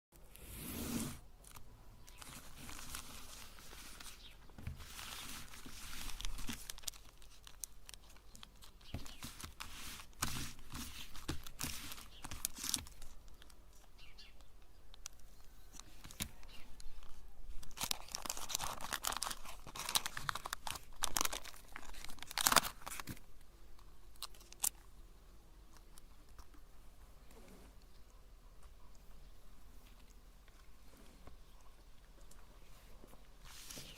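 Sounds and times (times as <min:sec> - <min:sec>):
wrappers crinkling and tearing: 0:01.4 - 0:13.9, 0:15.8 - 0:23.3, 0:24.1 - 0:24.9.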